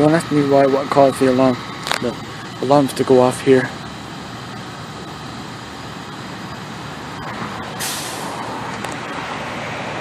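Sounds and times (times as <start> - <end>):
heavy vehicle engine running: 0.0 - 10.0
air brakes hiss: 7.8 - 8.4.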